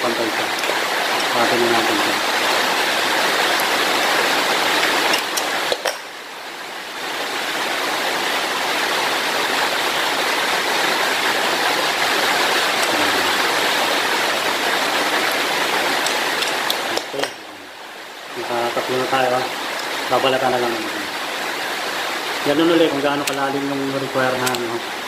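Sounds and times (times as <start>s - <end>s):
heavy rain on roof: 0.0s - 25.0s
sharp clicks: 23.2s - 23.6s.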